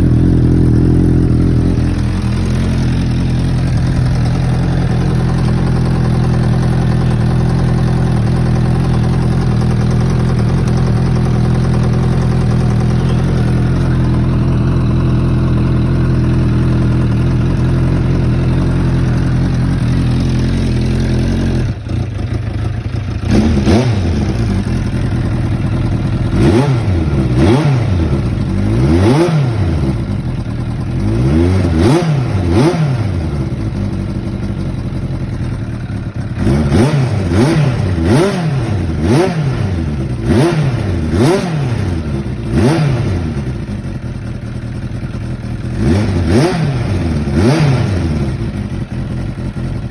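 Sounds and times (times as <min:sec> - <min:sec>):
motorcycle engine idling: 0:00.0 - 0:49.9
throttle blips revving engine: 0:23.3 - 0:24.4, 0:26.3 - 0:30.0, 0:31.1 - 0:33.3, 0:36.4 - 0:43.3, 0:45.8 - 0:48.4.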